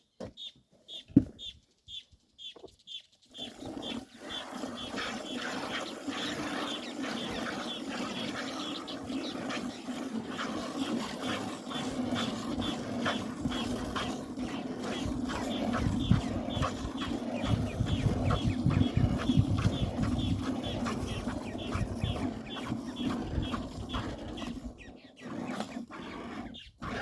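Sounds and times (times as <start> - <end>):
bird chirping: 0.1 - 9.4, 17.4 - 25.3
milk squirting into a pail: 3.5 - 26.0.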